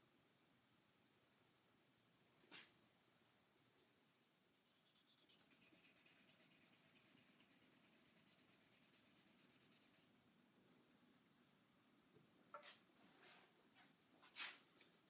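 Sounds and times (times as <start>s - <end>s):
wet sandpaper rubbing: 4.3s - 10.1s.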